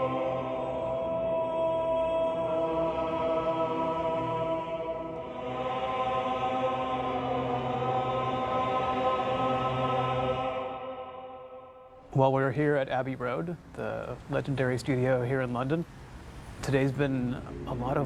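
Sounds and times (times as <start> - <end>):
male choir chanting held notes: 0.0 - 12.1.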